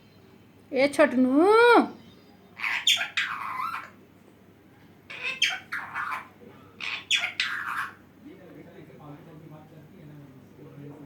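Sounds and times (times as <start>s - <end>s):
parrot squawking: 2.6s - 4.0s, 5.1s - 8.1s.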